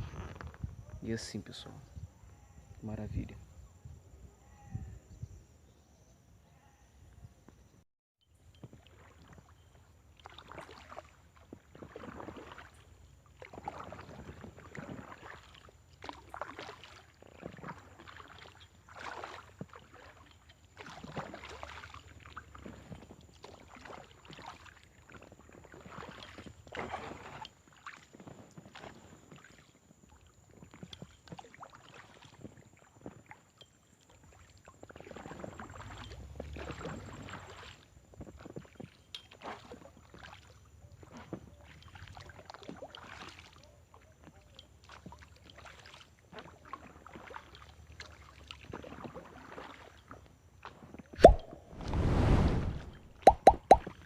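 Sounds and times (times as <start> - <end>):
paddle splashing through water: 8.7 - 54.0.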